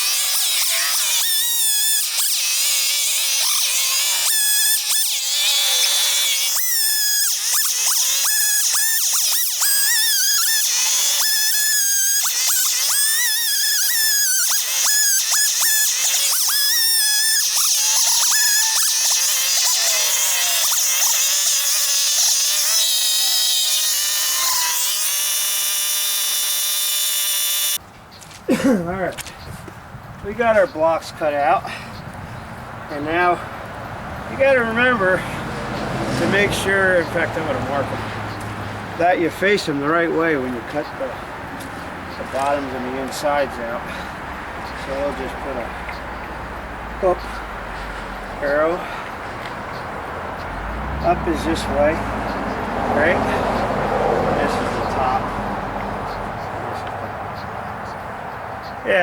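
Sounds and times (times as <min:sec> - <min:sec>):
chainsaw cutting log: 0:00.0 - 0:27.8, 0:34.4 - 0:41.2, 0:42.1 - 0:43.6, 0:50.8 - 0:55.8.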